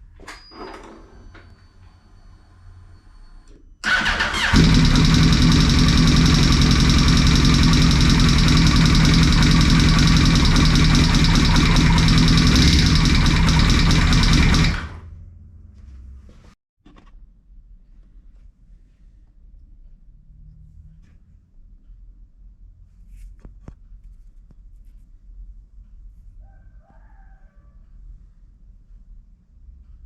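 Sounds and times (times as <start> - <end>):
electric starter cranking: 3.8 - 15.1
engine ticking noise: 3.9 - 15.2
motorcycle engine idling: 3.9 - 15.4.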